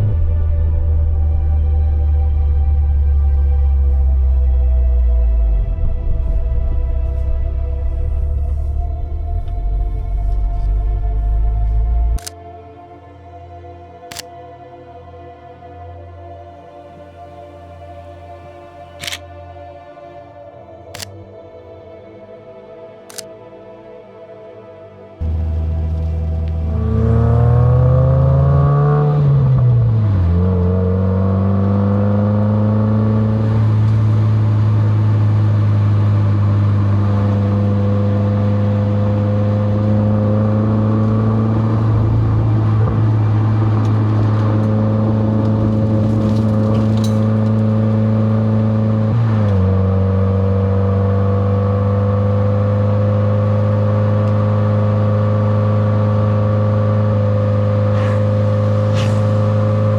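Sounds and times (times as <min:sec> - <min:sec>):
car engine cruising: 0:00.0 - 0:12.4, 0:25.2 - 0:59.9.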